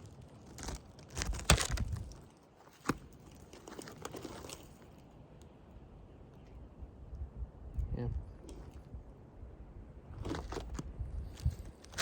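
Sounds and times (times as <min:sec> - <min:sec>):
roof shingle crinkling and cracking: 0:00.0 - 0:05.5.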